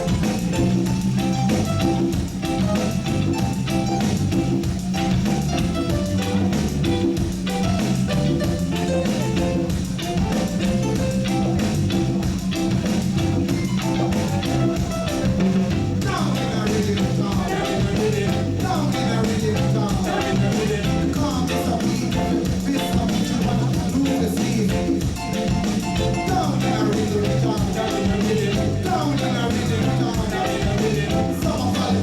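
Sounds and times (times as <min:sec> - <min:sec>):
heavy bass line: 0:00.0 - 0:32.0
reggae band playing: 0:00.0 - 0:32.0
person singing: 0:16.0 - 0:32.0.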